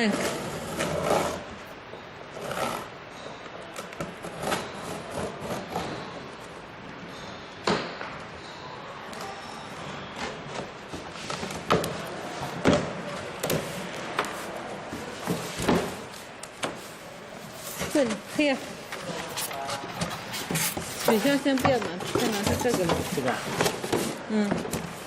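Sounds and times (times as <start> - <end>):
cardboard rustling and scraping: 10.5 - 25.0.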